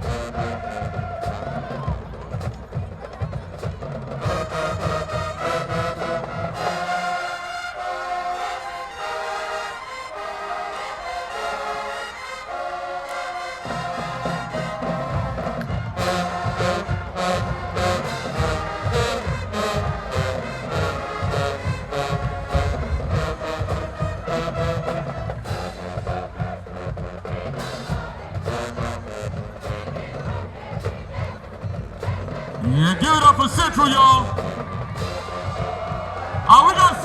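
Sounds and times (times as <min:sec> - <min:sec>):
low horns: 0:00.0 - 0:02.3, 0:04.2 - 0:37.0
drums and cymbals: 0:00.0 - 0:07.8, 0:13.6 - 0:37.0
marching band brass playing: 0:00.0 - 0:37.0.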